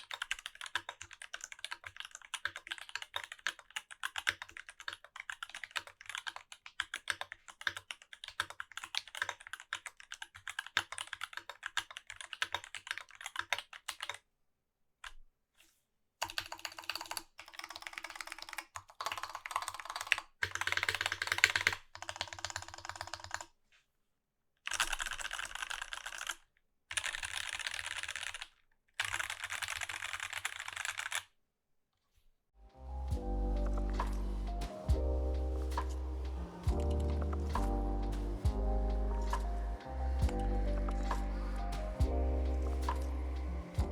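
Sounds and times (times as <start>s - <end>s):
mechanical keyboard typing: 0.0s - 14.2s, 16.2s - 23.5s, 24.7s - 31.3s, 33.1s - 43.9s.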